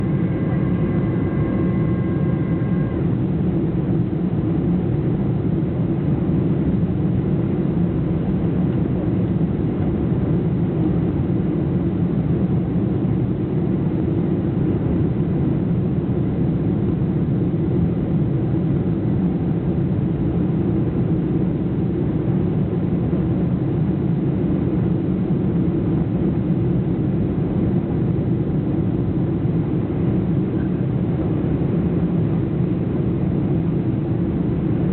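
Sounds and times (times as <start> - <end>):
faint steady tones: 0.0 - 4.2
airliner cabin engine noise: 0.0 - 34.9.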